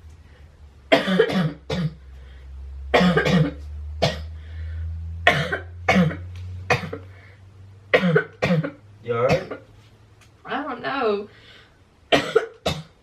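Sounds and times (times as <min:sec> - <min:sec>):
low hum: 0:00.0 - 0:12.2
woman coughing: 0:00.9 - 0:02.0, 0:03.0 - 0:04.3, 0:05.3 - 0:07.1, 0:07.9 - 0:09.6, 0:12.1 - 0:13.0.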